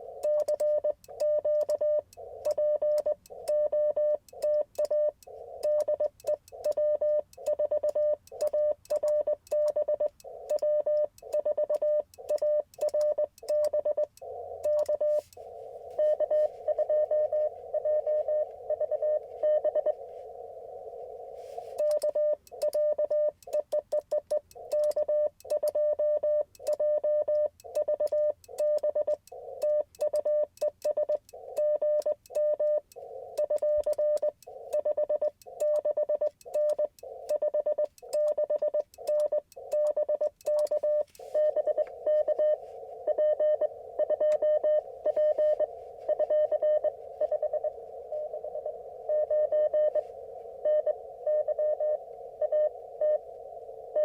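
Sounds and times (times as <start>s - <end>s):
morse code tone: 0.0s - 54.0s
radio band noise hiss: 14.4s - 16.7s, 18.5s - 21.8s, 41.0s - 44.2s, 44.8s - 54.0s.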